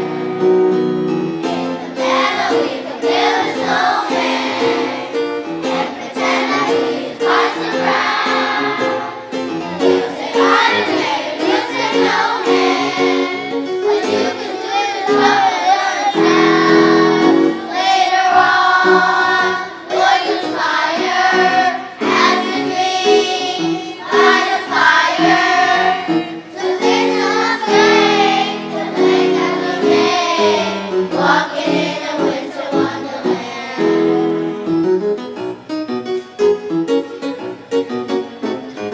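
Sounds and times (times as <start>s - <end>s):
children's choir singing: 0.0s - 35.5s.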